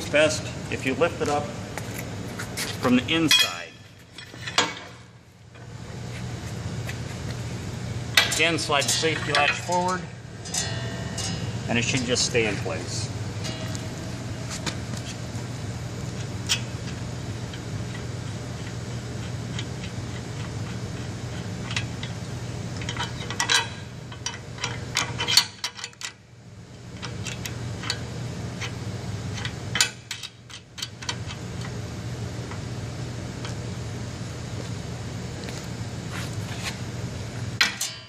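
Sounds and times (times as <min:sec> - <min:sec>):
steady low hum: 0:00.0 - 0:38.0
metal hardware clinking: 0:08.2 - 0:12.2.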